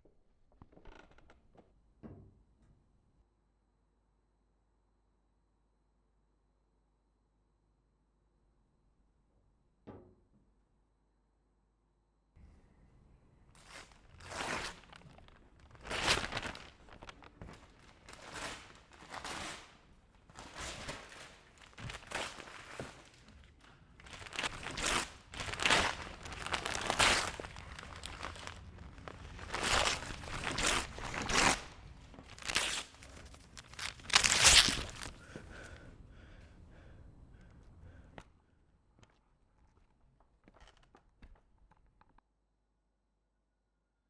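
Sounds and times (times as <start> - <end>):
crunching and rustling foley: 13.6 - 35.8.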